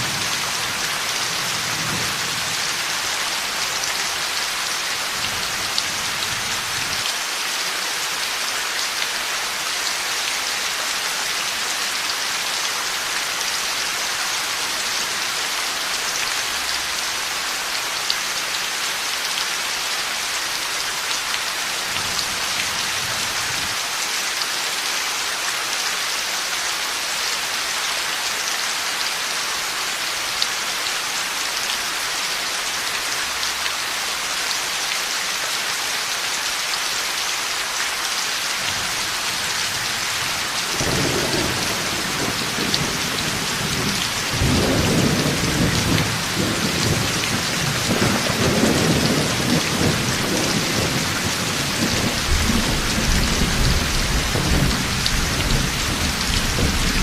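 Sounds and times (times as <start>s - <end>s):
heavy rain falling: 0.0s - 57.0s
thunder rumbling: 40.7s - 57.0s.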